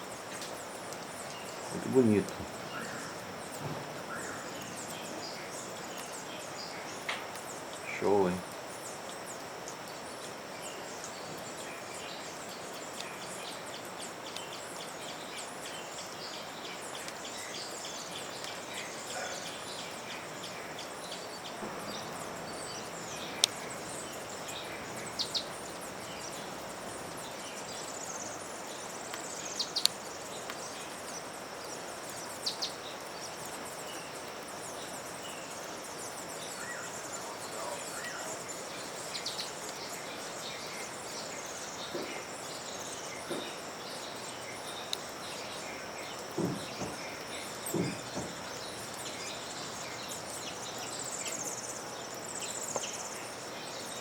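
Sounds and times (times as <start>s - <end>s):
insects chirring: 0.0s - 54.0s
bird chirps: 0.3s - 8.9s, 9.9s - 54.0s.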